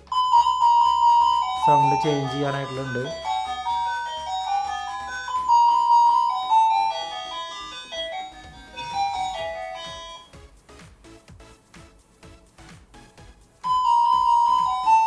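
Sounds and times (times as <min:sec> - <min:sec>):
doorbell electronic chime melody: 0:00.0 - 0:10.3, 0:13.6 - 0:15.0.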